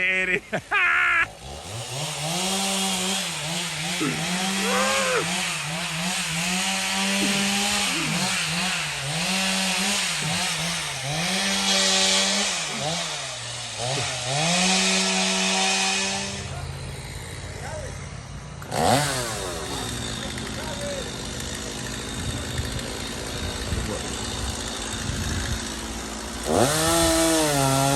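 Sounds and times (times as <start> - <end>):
chainsaw cutting wood: 0.8 - 27.9.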